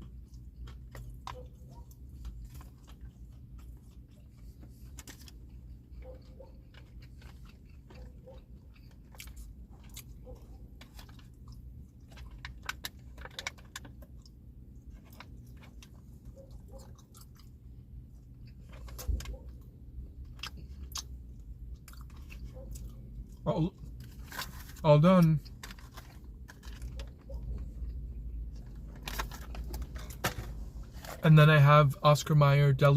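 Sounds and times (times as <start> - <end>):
person chewing: 0.0 - 24.7
crisp crunches: 0.4 - 17.5, 21.8 - 31.2.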